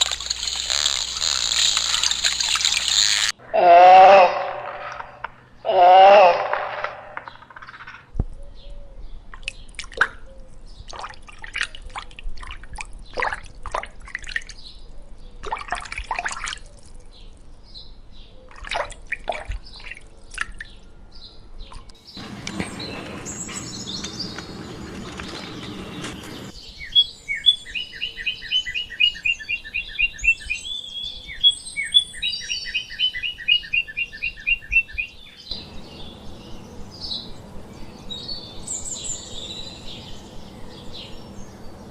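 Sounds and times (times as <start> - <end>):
hissy noise: 0.0 - 3.3
birds chirping: 0.0 - 3.5, 4.2 - 8.8, 21.6 - 41.9
bird trilling: 22.2 - 26.6.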